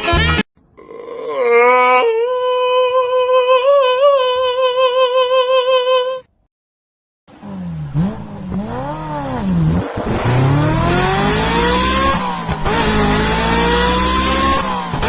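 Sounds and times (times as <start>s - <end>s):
car engine revving and accelerating: 7.4s - 15.0s.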